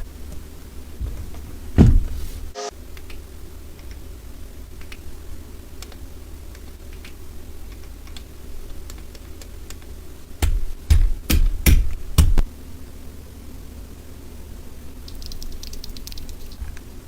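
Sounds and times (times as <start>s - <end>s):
heavy knocks: 1.0s - 2.2s, 10.4s - 12.4s
faint clicks: 2.9s - 4.1s, 4.8s - 5.1s, 5.8s - 10.5s, 15.0s - 16.9s.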